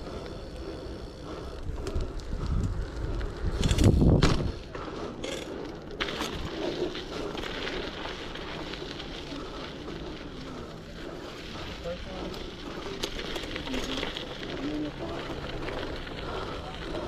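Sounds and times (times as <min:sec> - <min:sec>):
bike rattling clicks: 0:00.0 - 0:17.0
bike tyres rolling: 0:00.0 - 0:17.0
wind noise: 0:01.2 - 0:04.9
bike landing thud: 0:03.8 - 0:04.6.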